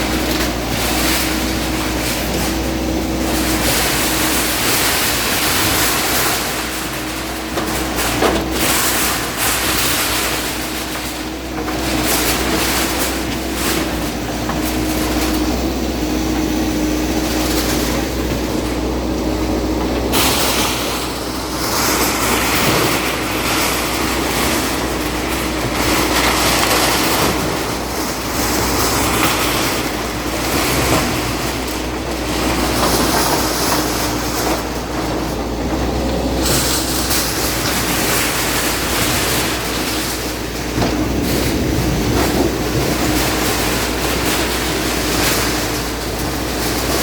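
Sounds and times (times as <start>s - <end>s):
bulldozer diesel engine rumble: 0.0s - 47.0s.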